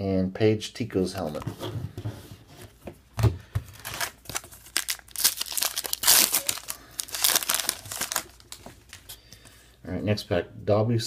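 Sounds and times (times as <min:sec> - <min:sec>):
foil wrapper crinkling and tearing: 0:03.7 - 0:09.1.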